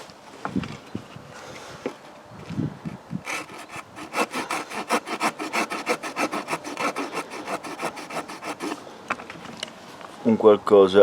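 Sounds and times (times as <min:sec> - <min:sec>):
small saw cutting log: 0:03.2 - 0:08.9.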